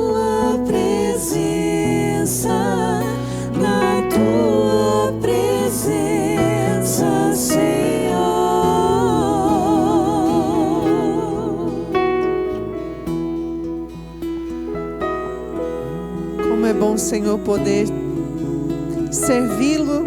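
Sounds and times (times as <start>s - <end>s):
person singing with vibrato: 0.0s - 13.2s, 15.0s - 20.0s.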